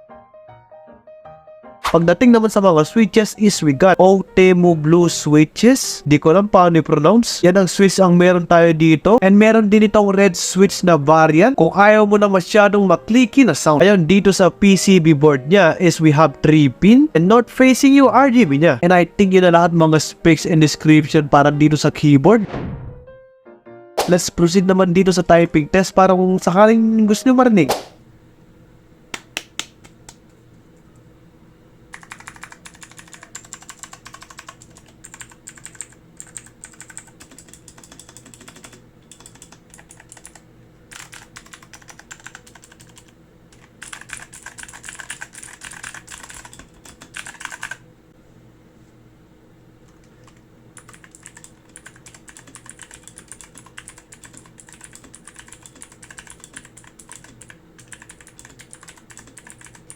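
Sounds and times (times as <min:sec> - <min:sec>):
mechanical keyboard typing: 0:31.9 - 0:47.8, 0:50.2 - 0:59.9.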